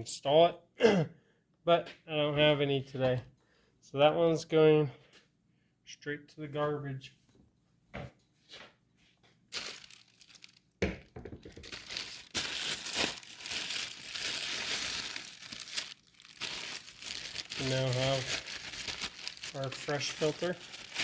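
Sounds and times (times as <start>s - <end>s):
plastic wrapping crinkling: 9.5s - 21.0s.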